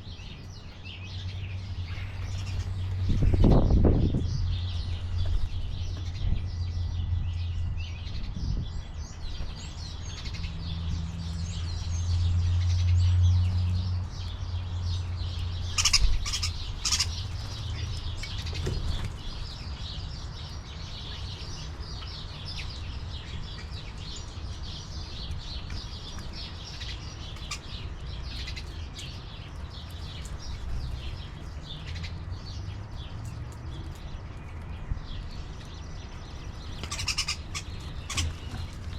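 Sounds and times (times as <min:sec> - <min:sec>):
steady low rumble: 0:00.0 - 0:19.9
small birds chirping: 0:00.0 - 0:38.9.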